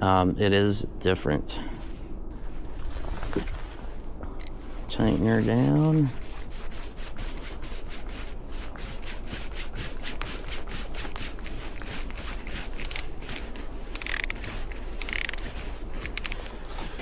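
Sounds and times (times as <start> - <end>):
hand ratchet clicking: 11.8 - 16.6.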